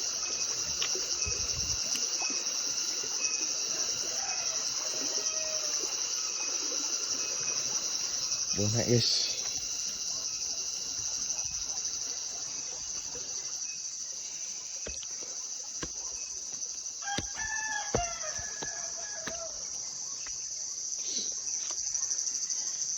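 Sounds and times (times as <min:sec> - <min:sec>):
crickets chirping: 0:00.0 - 0:22.9
rooster crowing: 0:04.1 - 0:05.8, 0:17.0 - 0:19.6.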